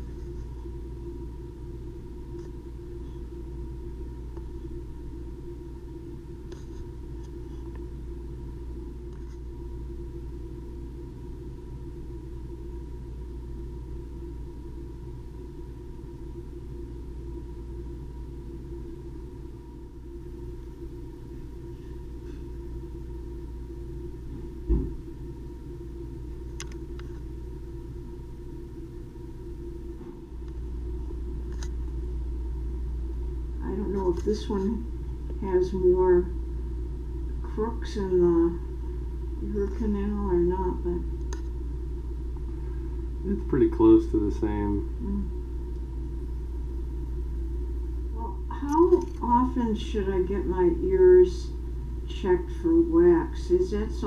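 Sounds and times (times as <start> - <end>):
suction unit humming: 0.0 - 54.0
thump: 24.7 - 25.0.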